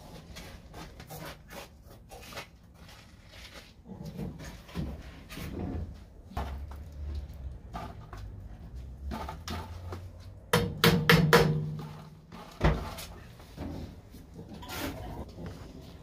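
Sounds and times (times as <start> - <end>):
hammer strikes on metal: 10.5 - 11.8.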